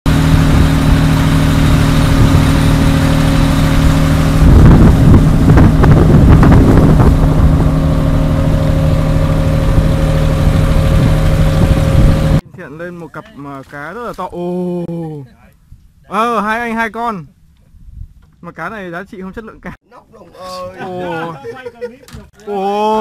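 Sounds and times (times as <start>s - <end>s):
boat engine running: 0.1s - 12.4s.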